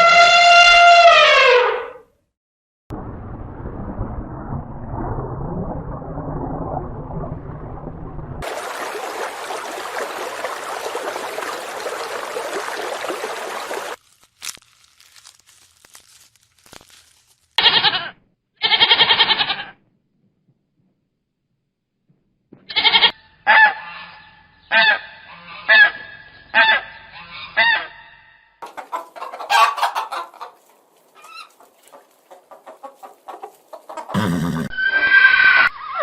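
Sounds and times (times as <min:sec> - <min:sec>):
goat bleating: 0:17.6 - 0:19.8, 0:22.7 - 0:23.1.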